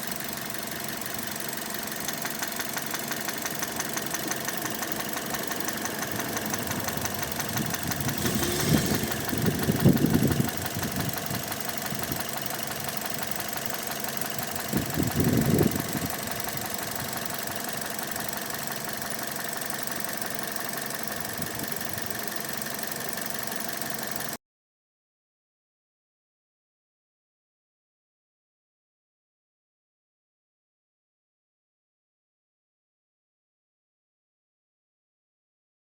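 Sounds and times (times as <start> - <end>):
engine with rhythmic knock: 0.0 - 24.4.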